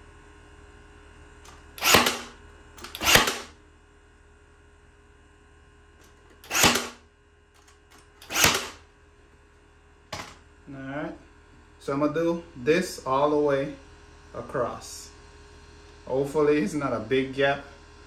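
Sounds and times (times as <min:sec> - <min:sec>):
brad nailer firing: 0:01.5 - 0:03.6, 0:06.4 - 0:07.0, 0:07.6 - 0:08.8.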